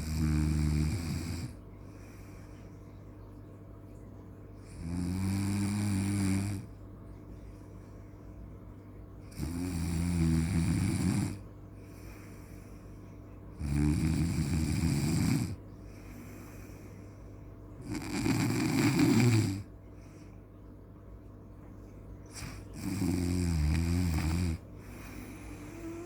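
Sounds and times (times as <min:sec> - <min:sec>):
person snoring: 0:00.0 - 0:01.6, 0:09.3 - 0:11.4, 0:13.6 - 0:15.6, 0:17.8 - 0:19.7, 0:22.4 - 0:26.0
faint steady hum: 0:00.0 - 0:26.0.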